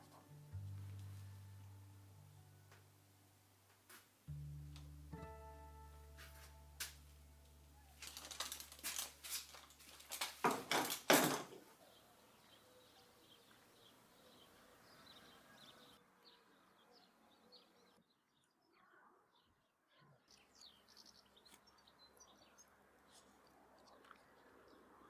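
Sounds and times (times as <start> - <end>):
faint birds chirping: 11.6 - 25.0.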